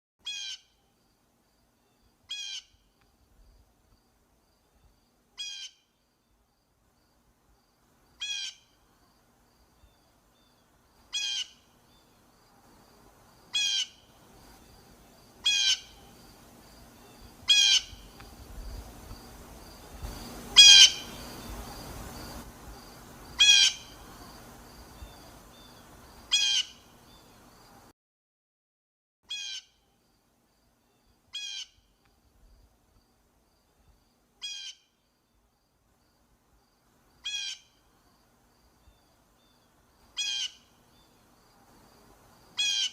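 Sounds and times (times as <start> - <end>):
blue jay harsh call: 0.2 - 0.8, 2.3 - 2.8, 5.4 - 5.9, 8.2 - 8.8, 11.1 - 11.8, 13.5 - 14.1, 15.4 - 16.2, 17.4 - 18.2, 20.5 - 21.4, 23.4 - 24.0, 26.3 - 26.9, 29.3 - 29.8, 31.3 - 31.8, 34.4 - 34.9, 37.2 - 37.8, 40.2 - 40.8, 42.6 - 42.9.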